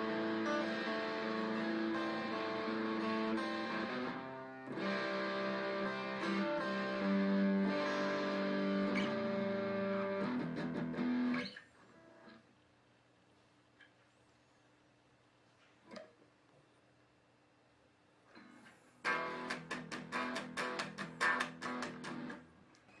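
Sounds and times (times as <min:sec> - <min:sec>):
guitar playing ringing chords: 0:00.0 - 0:11.6, 0:19.1 - 0:22.5.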